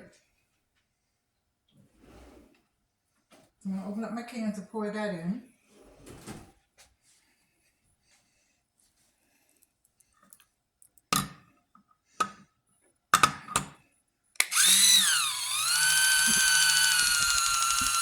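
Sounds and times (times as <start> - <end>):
electric can opener motor whine: 14.4 - 18.0.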